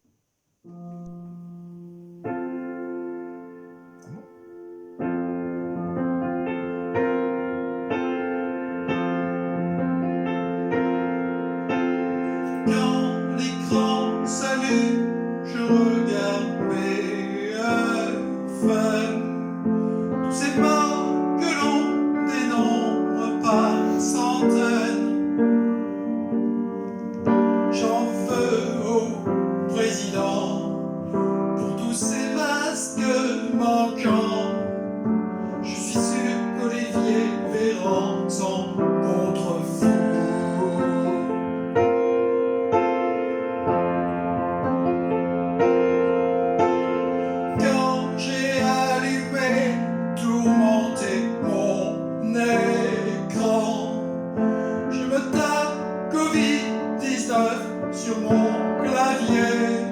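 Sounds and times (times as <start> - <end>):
keyboard playing slow song: 0.7 - 59.9
person singing: 12.2 - 41.8, 47.2 - 59.9.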